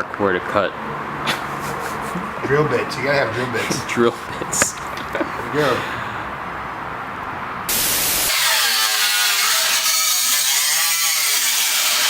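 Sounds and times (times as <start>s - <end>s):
power tool cutting metal panel: 7.7s - 12.0s.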